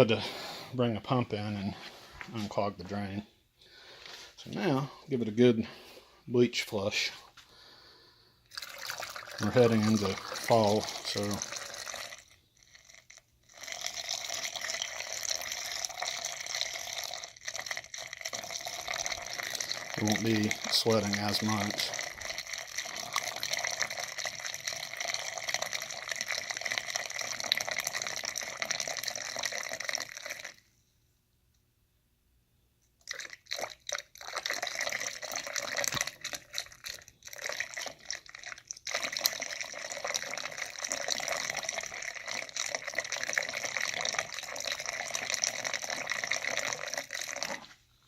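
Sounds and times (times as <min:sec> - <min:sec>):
liquid pouring into drain line: 0:08.5 - 0:30.6, 0:33.0 - 0:47.8
liquid splashing: 0:08.5 - 0:30.6, 0:33.0 - 0:47.8.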